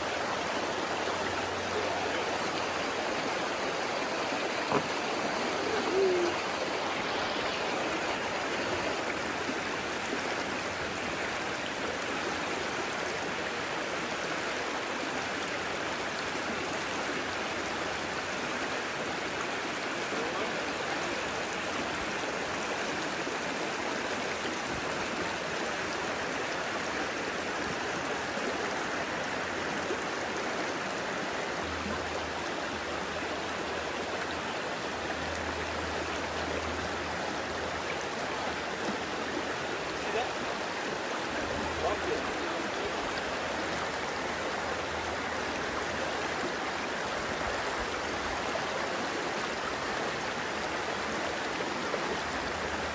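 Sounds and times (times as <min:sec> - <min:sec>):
creek water over rocks: 0:00.0 - 0:52.9.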